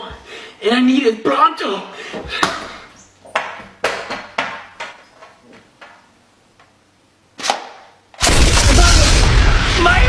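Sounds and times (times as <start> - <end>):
loud blast: 8.2 - 10.0.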